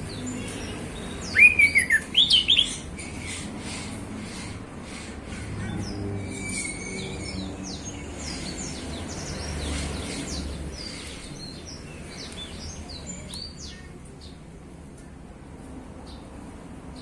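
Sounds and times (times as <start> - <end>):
thrush singing: 1.0 - 2.9.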